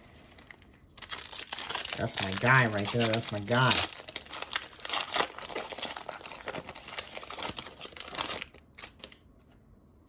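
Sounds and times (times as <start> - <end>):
plastic wrapper crinkling: 0.0 - 9.2.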